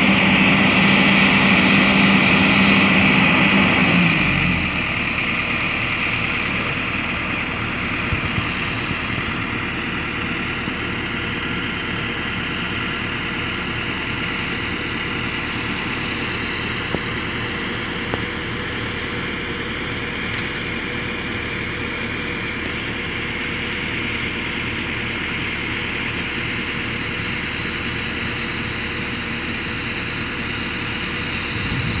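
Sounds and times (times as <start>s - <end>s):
diesel engine idling: 0.0s - 23.8s, 28.6s - 32.0s
thin high whine: 30.5s - 32.0s.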